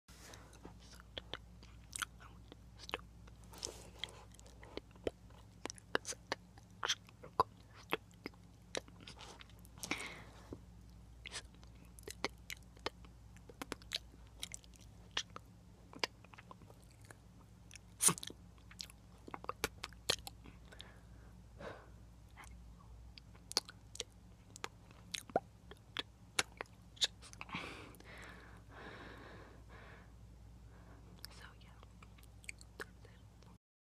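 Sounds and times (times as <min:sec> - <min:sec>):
heavy breaths: 0:09.8 - 0:10.6, 0:27.5 - 0:31.2
wet mouth clicks: 0:17.8 - 0:20.8, 0:23.2 - 0:27.5, 0:31.2 - 0:33.2
tongue clicks: 0:23.3 - 0:27.5
wet lip smacks: 0:23.4 - 0:27.5
breathy whisper: 0:30.8 - 0:32.0.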